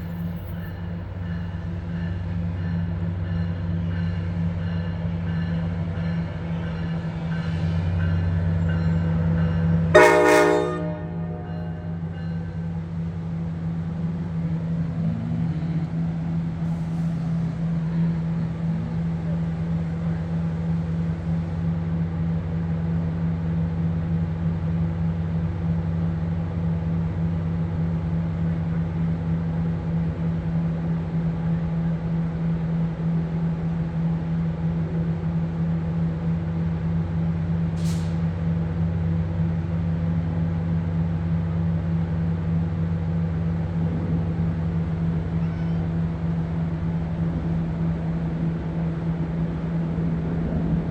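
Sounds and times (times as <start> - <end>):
locomotive diesel engine humming: 9.1 - 22.2, 37.1 - 50.9.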